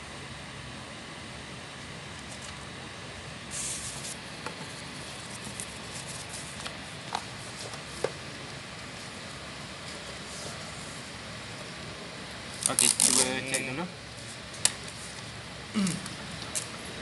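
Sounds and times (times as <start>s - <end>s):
steady background hiss: 0.0s - 17.0s.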